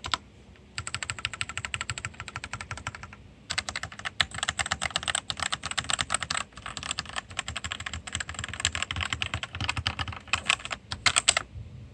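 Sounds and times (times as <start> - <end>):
mechanical keyboard typing: 0.0 - 0.2, 0.8 - 11.4.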